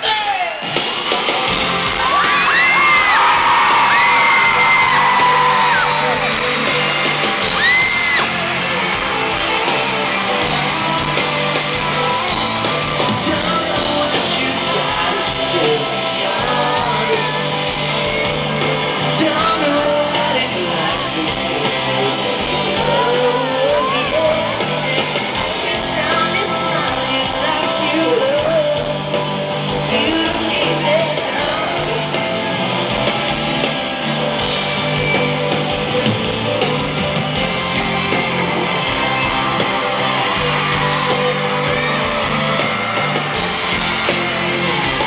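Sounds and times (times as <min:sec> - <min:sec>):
audience shouting and singing along: 0:00.0 - 0:45.0
live band playing ballad: 0:00.0 - 0:45.0
person singing: 0:09.6 - 0:32.5.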